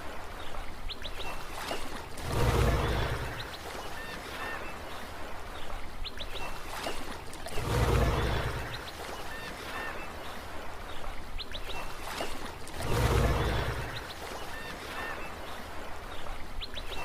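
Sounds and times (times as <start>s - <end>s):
sea waves washing: 0.0s - 17.0s
birds chirping: 2.2s - 17.0s.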